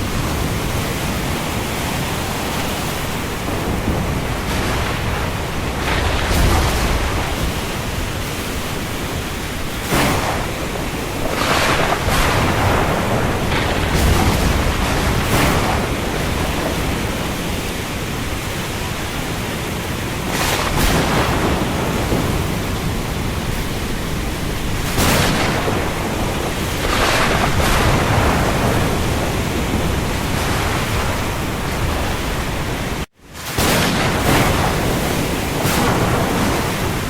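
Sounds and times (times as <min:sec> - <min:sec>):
rain falling on sea: 0:00.0 - 0:37.0
waves surging: 0:00.0 - 0:37.0.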